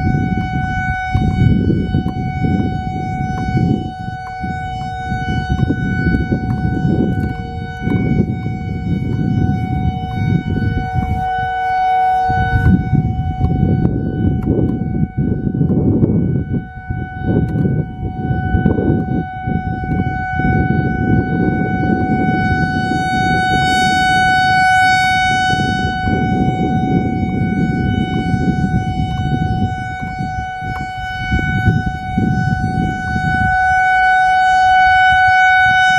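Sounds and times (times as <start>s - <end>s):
warning siren steady tone: 0.0s - 35.9s
wind buffeting microphone: 0.0s - 35.9s.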